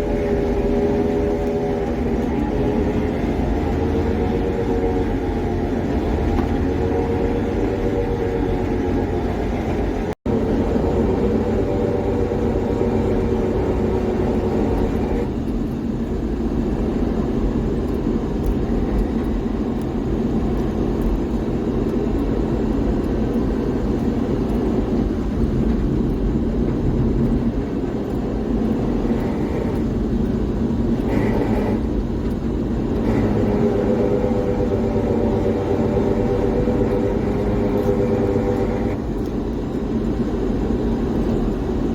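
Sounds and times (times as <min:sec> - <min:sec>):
truck engine running with whine: 0:00.0 - 0:41.9.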